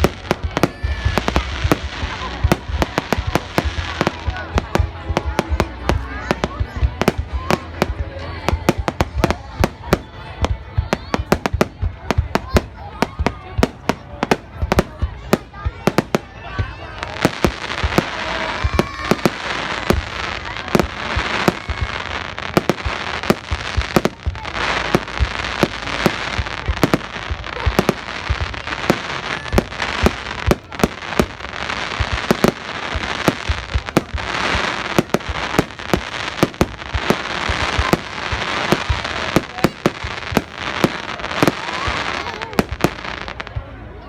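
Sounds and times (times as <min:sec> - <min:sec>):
fireworks crackling hiss: 0:00.0 - 0:43.7
fireworks bangs: 0:00.0 - 0:43.8.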